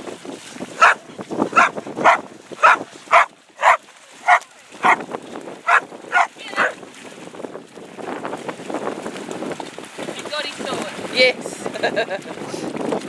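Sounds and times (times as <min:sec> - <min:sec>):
dog barking: 0:00.8 - 0:05.0, 0:05.6 - 0:06.8.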